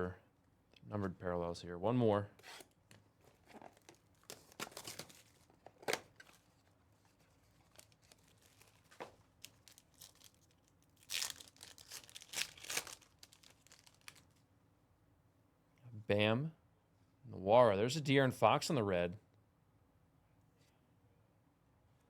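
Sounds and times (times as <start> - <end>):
wrapper tearing and crinkling: 3.7 - 6.5, 7.4 - 14.4.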